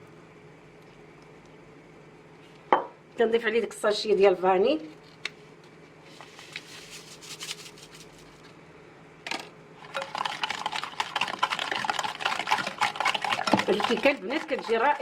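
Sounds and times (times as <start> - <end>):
utensil beating batter in bowl: 9.8 - 15.0.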